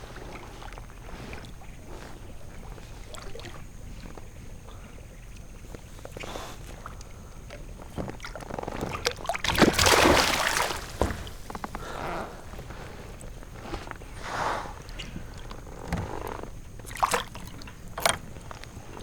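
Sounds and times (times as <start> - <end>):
water splashing: 8.9 - 11.5, 16.8 - 18.2
knocks against a kayak: 8.9 - 11.8.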